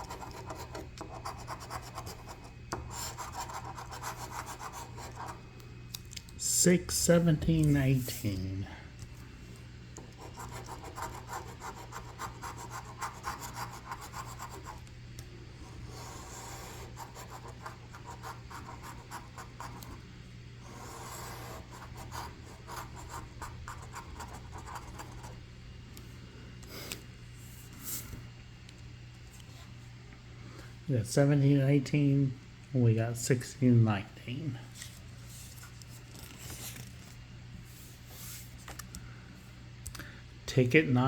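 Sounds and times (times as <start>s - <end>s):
coin scratching lottery ticket: 0.0s - 5.4s, 10.2s - 14.8s, 15.9s - 19.8s, 20.7s - 25.3s.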